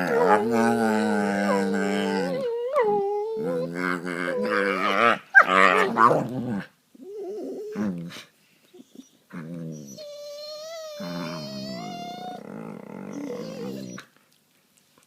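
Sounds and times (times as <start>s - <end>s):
dogs growling: 0.0s - 2.7s, 10.9s - 14.0s
dog whining: 0.0s - 6.2s, 7.0s - 8.0s, 8.8s - 14.1s.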